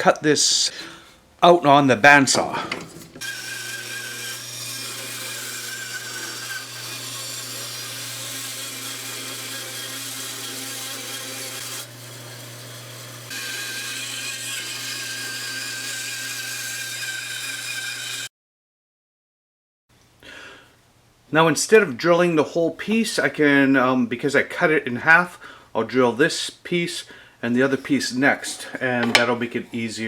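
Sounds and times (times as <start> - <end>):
bandsaw motor hum: 2.4 - 18.3
bandsaw cutting wood hiss: 2.5 - 12.0.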